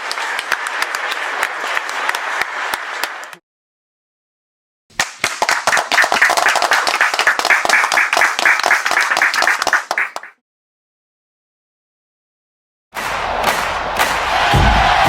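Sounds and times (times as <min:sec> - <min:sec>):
audience clapping: 0:00.0 - 0:03.4, 0:04.9 - 0:10.4, 0:13.0 - 0:15.0.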